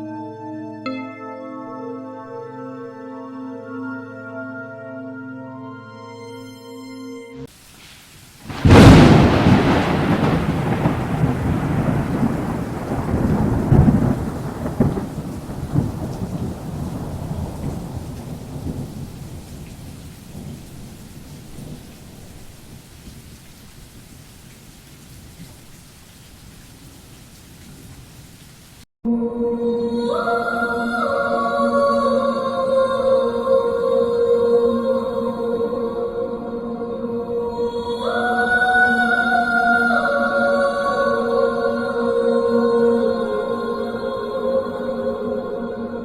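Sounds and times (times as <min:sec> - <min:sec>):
rain hissing: 0:07.4 - 0:28.9
thunderclap rumbling: 0:08.4 - 0:22.8.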